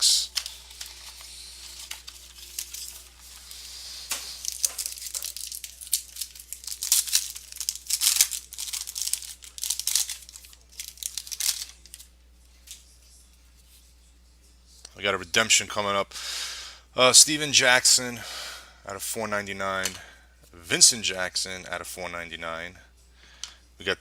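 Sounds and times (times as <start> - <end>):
plastic wrapping tearing and crinkling: 0.0 - 12.8.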